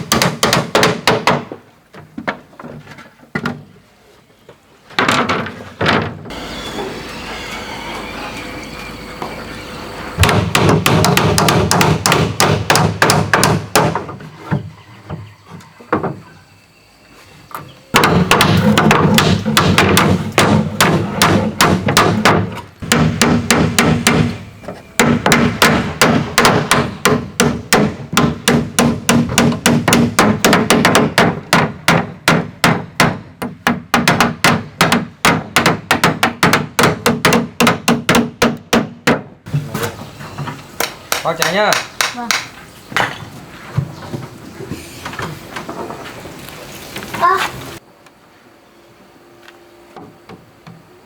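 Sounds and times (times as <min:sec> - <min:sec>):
hammer striking wood: 0:00.0 - 0:01.6, 0:10.2 - 0:14.2, 0:18.0 - 0:39.4, 0:40.8 - 0:43.2.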